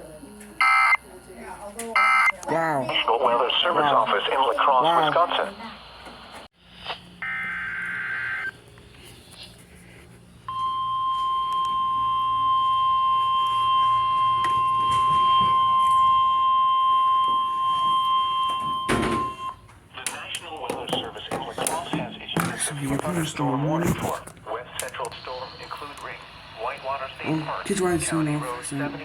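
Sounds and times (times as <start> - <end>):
radio crackle: 2.8 - 8.6, 20.0 - 29.0.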